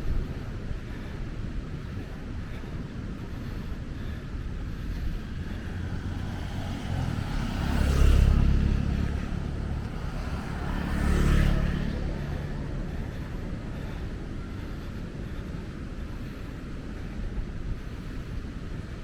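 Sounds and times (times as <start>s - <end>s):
low surf rumble: 0.0s - 19.0s
waves washing in: 2.7s - 15.6s.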